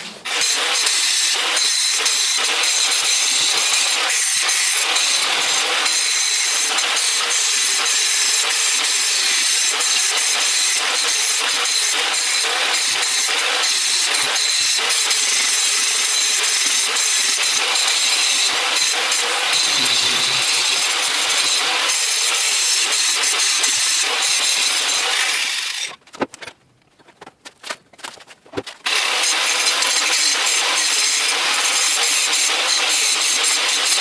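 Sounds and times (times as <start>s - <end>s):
electric grinder grinding steel rail: 0.0s - 26.0s, 28.8s - 34.0s
clicks and knocks: 25.9s - 28.8s.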